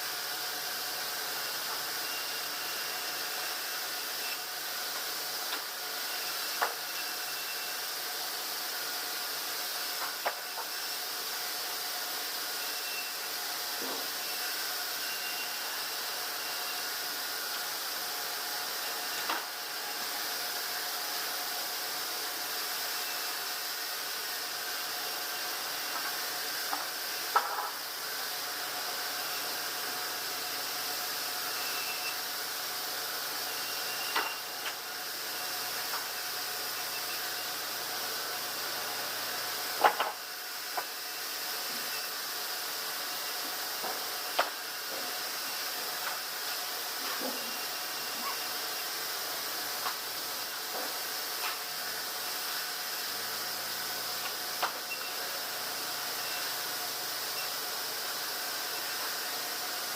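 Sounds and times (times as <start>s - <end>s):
sawmill machinery hiss: 0.0s - 59.9s.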